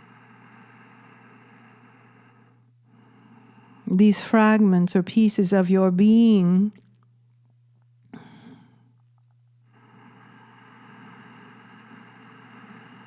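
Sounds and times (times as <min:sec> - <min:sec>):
low electrical hum: 0:00.0 - 0:13.0
woman speaking: 0:03.9 - 0:06.8.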